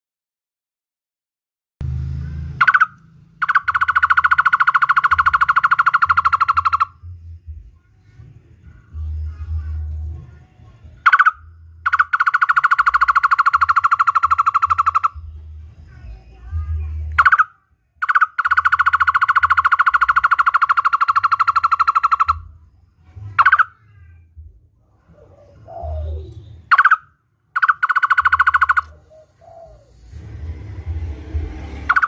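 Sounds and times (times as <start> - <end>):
barbet calling: 2.5 - 7.2, 11.0 - 15.3, 15.9 - 24.0, 25.0 - 30.3.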